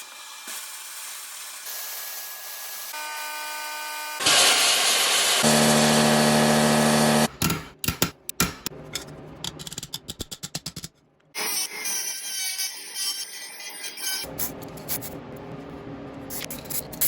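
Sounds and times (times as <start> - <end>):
power tool motor running: 3.0 - 7.3.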